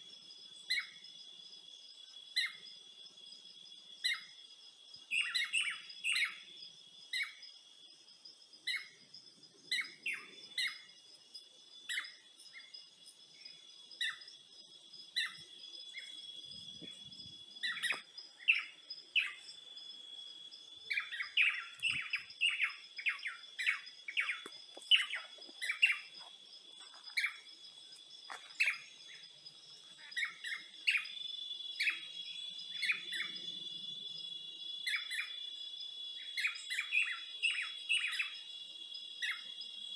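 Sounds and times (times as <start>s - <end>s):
high-pitched insect trill: 0.0s - 39.9s
birds chirping: 15.0s - 19.9s, 20.5s - 33.6s.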